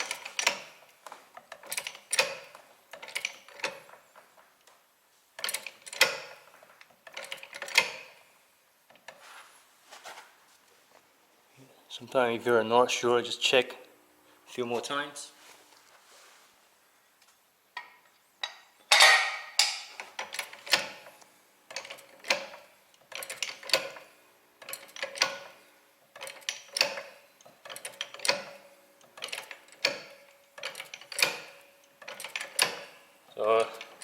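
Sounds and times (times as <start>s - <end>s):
trolley jack clanking and clicking: 0.0s - 0.8s, 1.4s - 4.0s, 5.4s - 8.2s, 18.4s - 21.1s, 21.7s - 28.6s, 29.2s - 33.0s.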